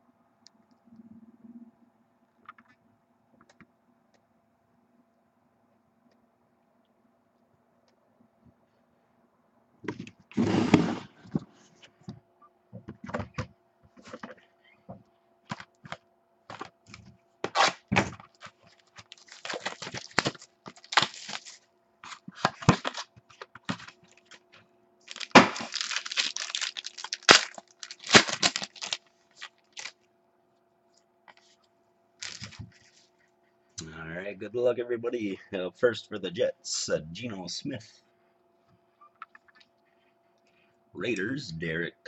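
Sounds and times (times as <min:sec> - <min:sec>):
wrapping crackling and tearing: 0:17.4 - 0:23.1, 0:24.0 - 0:30.0, 0:32.2 - 0:33.0.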